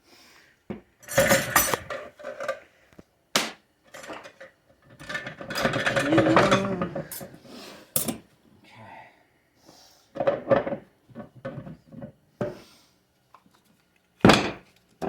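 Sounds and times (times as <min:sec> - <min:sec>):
steel parts clinking and clattering: 0:01.0 - 0:02.4, 0:03.9 - 0:07.4.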